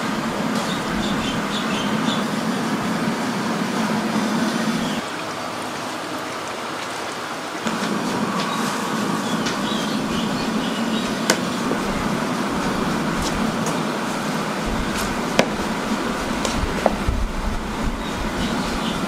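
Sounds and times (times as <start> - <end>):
machinery humming: 0.0 - 19.0.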